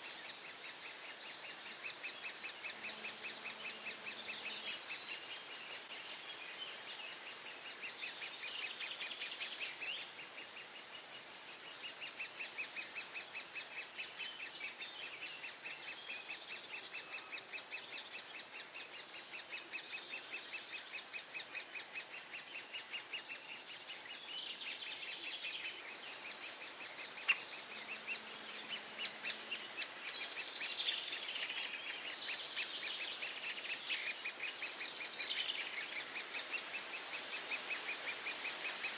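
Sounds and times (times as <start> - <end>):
faint birdsong: 0.0 - 38.9
woodpecker nestlings calling: 15.4 - 38.9.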